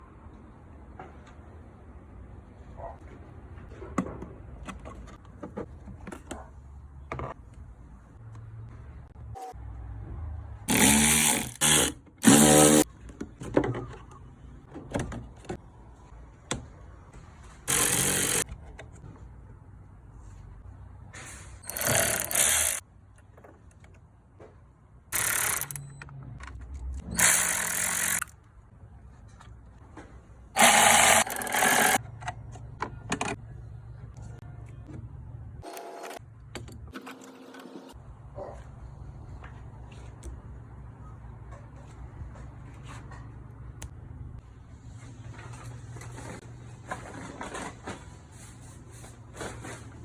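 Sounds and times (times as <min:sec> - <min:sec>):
handheld power tool bursts: 0:21.7 - 0:22.8, 0:27.1 - 0:28.3.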